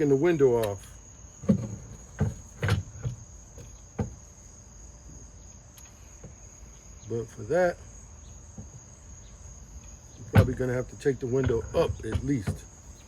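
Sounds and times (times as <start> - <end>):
crickets trilling: 0.0 - 13.0
knocks and clicks from car window: 1.4 - 4.2, 10.2 - 12.7.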